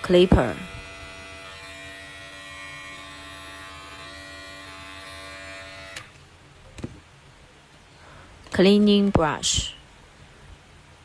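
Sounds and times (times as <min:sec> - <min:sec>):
hair clipper buzzing: 0:00.0 - 0:06.2.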